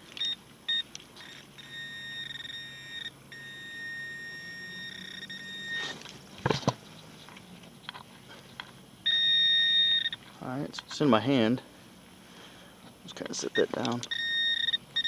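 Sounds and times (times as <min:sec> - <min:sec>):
metal detector high-pitched tone: 0:00.2 - 0:06.0, 0:09.0 - 0:10.2, 0:13.5 - 0:15.0.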